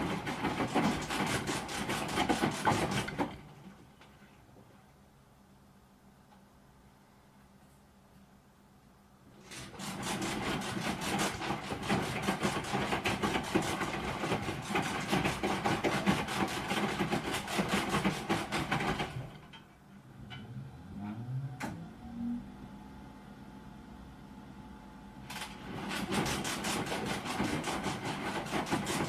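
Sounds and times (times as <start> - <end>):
washing machine scraping: 0.0 - 3.8, 9.4 - 22.4, 25.4 - 29.0
rising motor whine: 20.2 - 23.4.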